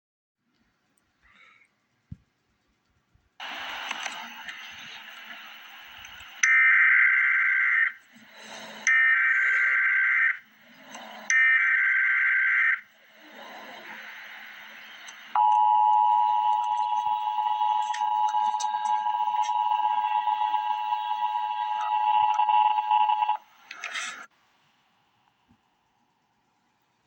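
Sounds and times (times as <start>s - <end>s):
rapid two-pitch data tones: 11.2s - 23.4s
steady two-tone attention signal: 14.6s - 23.4s.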